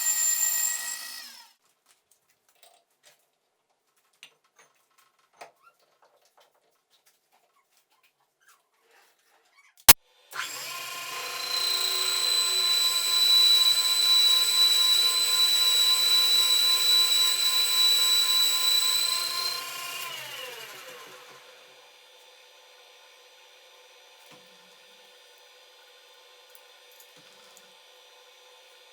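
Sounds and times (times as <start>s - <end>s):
lathe motor whining: 0.0s - 1.5s, 10.4s - 21.6s.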